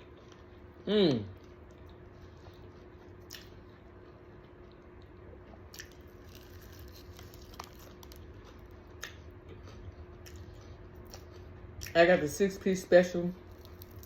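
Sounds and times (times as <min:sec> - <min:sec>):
chewing crispy food: 0:00.0 - 0:12.2, 0:13.1 - 0:14.0
low steady hum: 0:00.0 - 0:14.0.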